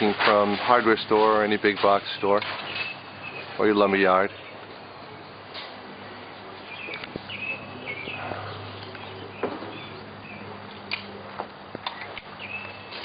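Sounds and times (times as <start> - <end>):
outdoor background noise: 0.0 - 13.0
bird chirping: 2.0 - 5.4, 6.0 - 10.9, 11.9 - 13.0.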